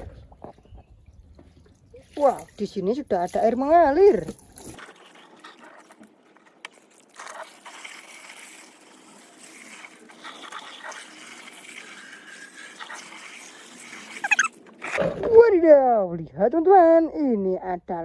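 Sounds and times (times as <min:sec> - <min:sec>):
water trickling and splashing: 0:00.0 - 0:14.9.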